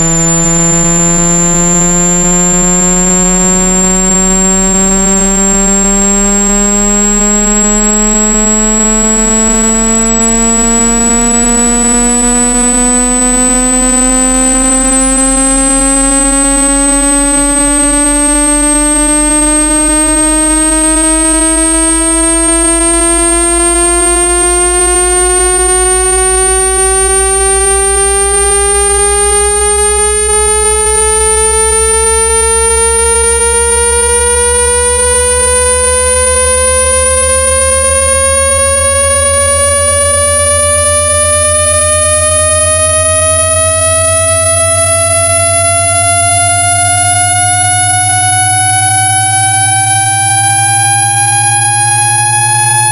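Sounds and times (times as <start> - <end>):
thin high whistle: 0.0 - 7.0
buzzy tone sweeping upward: 0.0 - 52.9
low bass hum: 0.0 - 52.9.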